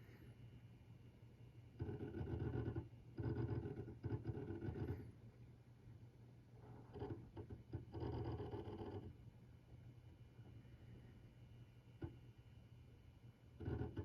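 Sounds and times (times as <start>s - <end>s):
hard drive buzzing and whirring: 1.7s - 5.2s, 6.8s - 9.2s, 13.4s - 14.0s
hard drive clicks: 13.6s - 14.0s.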